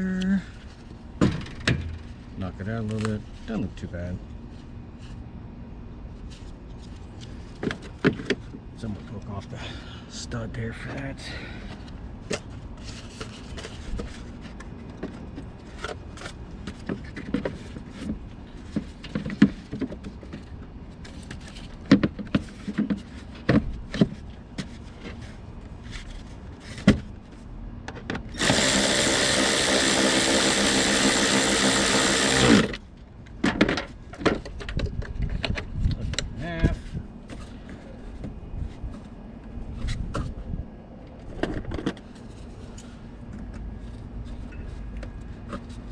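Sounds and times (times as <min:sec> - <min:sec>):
cordless power tool motor running: 0:28.3 - 0:32.8.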